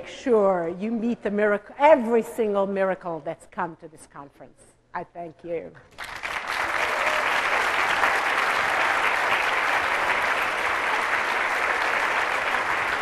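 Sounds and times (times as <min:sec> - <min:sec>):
large audience applauding: 0:05.9 - 0:13.0.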